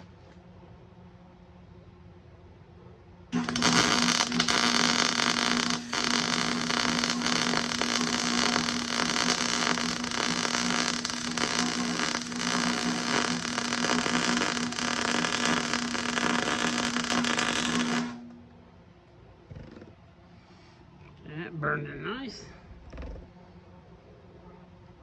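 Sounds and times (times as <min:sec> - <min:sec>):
arc welding crackle and hiss: 0:03.4 - 0:18.4
steady hum: 0:03.4 - 0:19.2.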